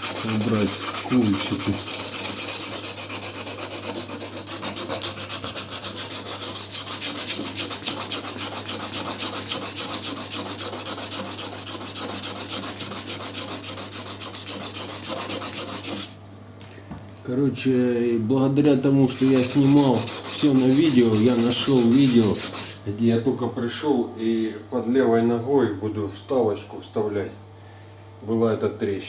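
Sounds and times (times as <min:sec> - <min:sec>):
sanding rasp: 0:00.0 - 0:16.2, 0:18.8 - 0:22.8.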